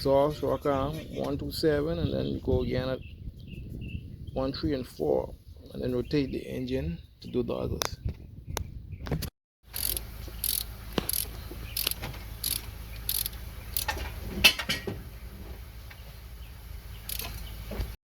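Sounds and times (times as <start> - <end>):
hand ratchet clicking: 9.7 - 14.0, 17.1 - 17.3.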